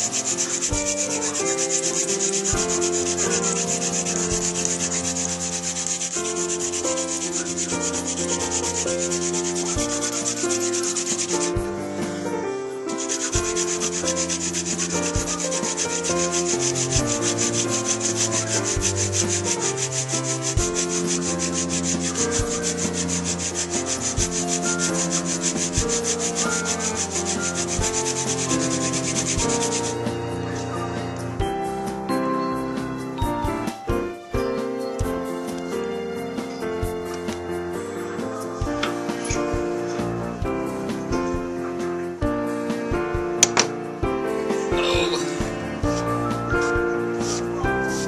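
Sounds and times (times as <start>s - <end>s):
dry wooden rubbing: 0.0s - 31.4s, 44.4s - 48.0s
background piano-like music: 0.0s - 48.0s.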